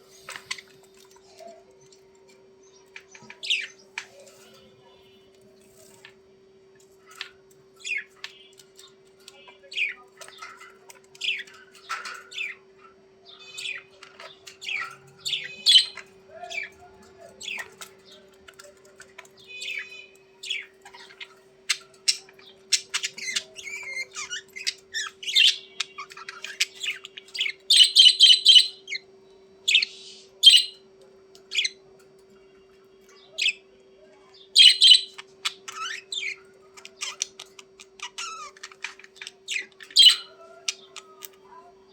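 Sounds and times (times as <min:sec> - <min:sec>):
budgerigars chirping and warbling: 0:00.0 - 0:02.0, 0:02.7 - 0:04.9, 0:06.8 - 0:32.4, 0:33.0 - 0:41.9
harsh bird squawks: 0:34.5 - 0:38.8.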